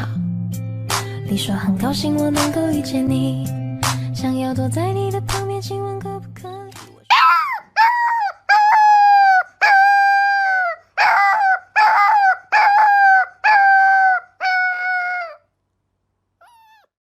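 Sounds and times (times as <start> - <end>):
animal crying: 7.1 - 15.5, 16.4 - 17.0.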